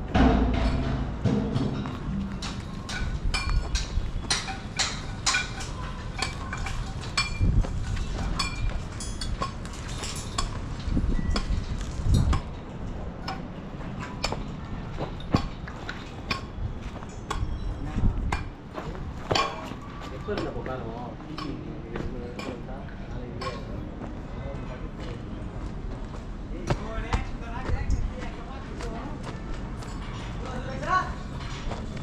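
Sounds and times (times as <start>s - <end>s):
sharp metallic clinks: 2.4s - 12.5s.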